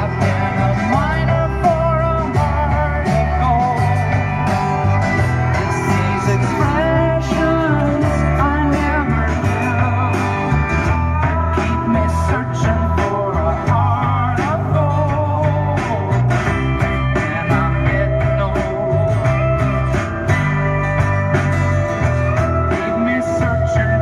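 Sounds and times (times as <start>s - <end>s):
bass: 0.0s - 24.0s
drum beat: 0.0s - 24.0s
rock guitar: 0.0s - 24.0s
person singing: 5.4s - 16.5s, 17.1s - 19.7s, 22.5s - 24.0s.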